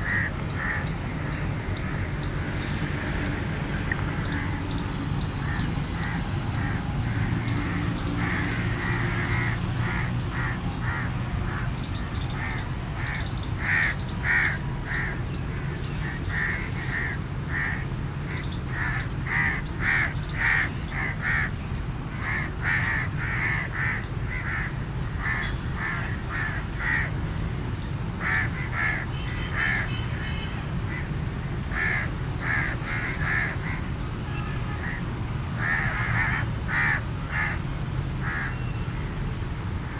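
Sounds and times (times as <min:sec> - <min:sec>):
crows cawing: 0:00.0 - 0:00.9, 0:05.4 - 0:21.5, 0:22.2 - 0:27.2, 0:28.2 - 0:30.0, 0:31.7 - 0:33.9, 0:34.8 - 0:35.0, 0:35.6 - 0:37.6, 0:38.2 - 0:38.6.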